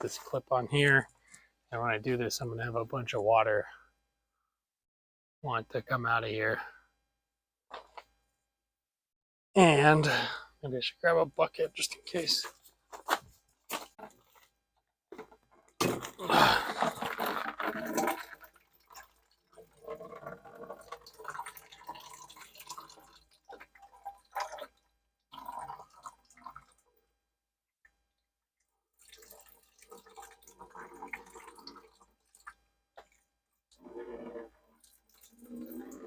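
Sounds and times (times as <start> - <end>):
water gushing from pipe: 16.2 - 24.7.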